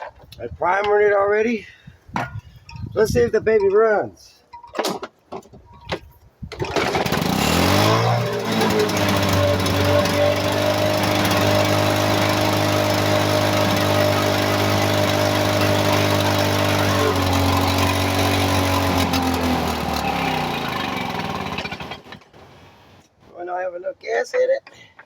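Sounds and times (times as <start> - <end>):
lawn mower engine running: 6.5 - 22.6.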